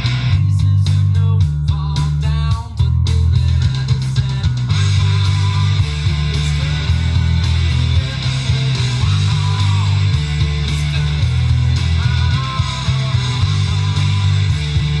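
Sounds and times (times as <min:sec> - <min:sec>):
loud rock music through speaker: 0:00.0 - 0:15.0.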